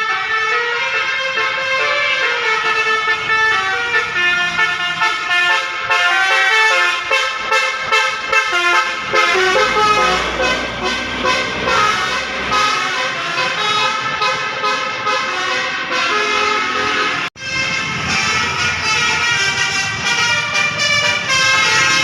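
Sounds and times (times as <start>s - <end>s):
musical bus horn playing tune: 0.8s - 22.0s
low engine rumble: 8.9s - 13.6s.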